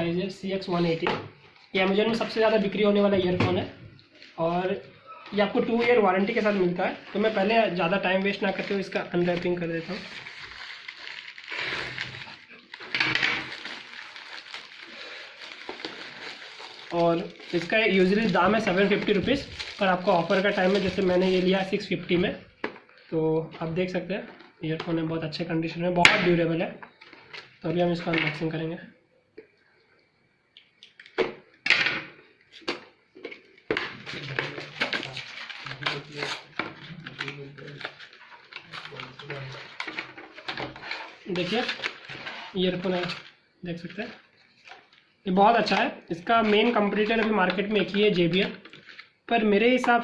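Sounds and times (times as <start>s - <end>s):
packaging rustling and crinkling: 5.7s - 23.1s, 32.5s - 49.2s.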